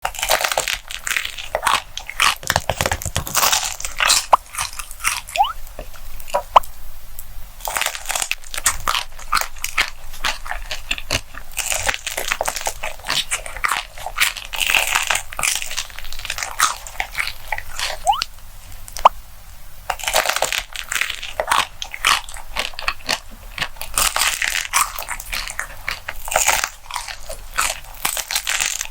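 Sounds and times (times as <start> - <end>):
crunchy bread chewing: 0.0 - 6.7, 7.6 - 18.0, 19.9 - 28.9.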